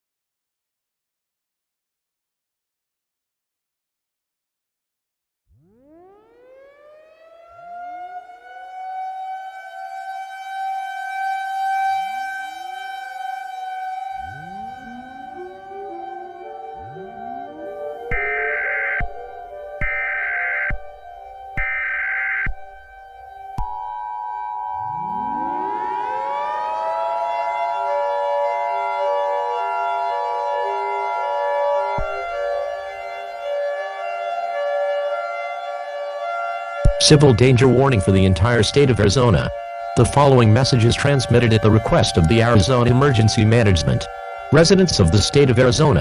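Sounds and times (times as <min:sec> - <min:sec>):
siren steady wail: 0:05.5 - 0:46.0
sirens winding up: 0:05.5 - 0:46.0
two-tone attention signal: 0:14.2 - 0:20.8.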